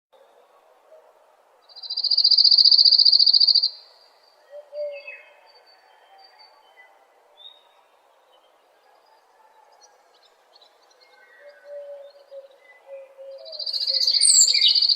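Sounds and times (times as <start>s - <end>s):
bird chirps and calls: 11.4s - 14.9s
songbird high trill: 13.6s - 14.9s.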